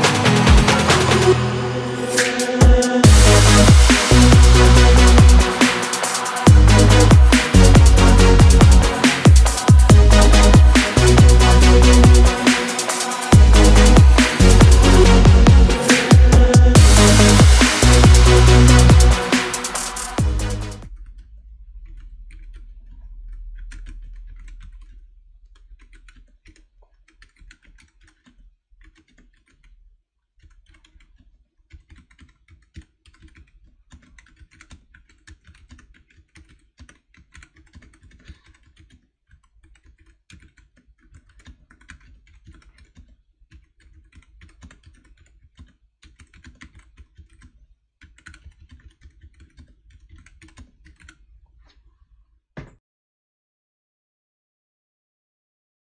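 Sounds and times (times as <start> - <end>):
keyboard typing clacks: 2.2 - 20.6
low rumble: 3.0 - 5.6, 6.5 - 12.4, 13.3 - 19.2, 20.2 - 24.8.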